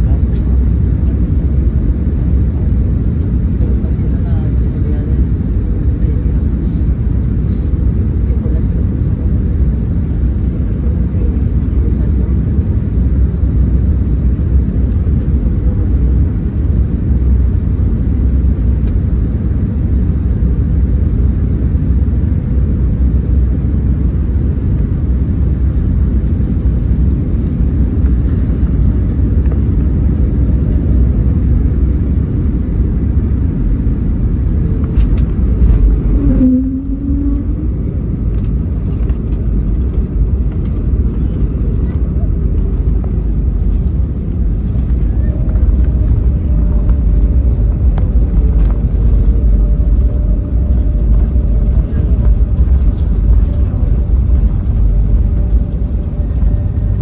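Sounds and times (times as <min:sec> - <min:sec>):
aircraft cabin engine rumble: 0:00.0 - 0:57.0
brief tone: 0:36.1 - 0:37.6.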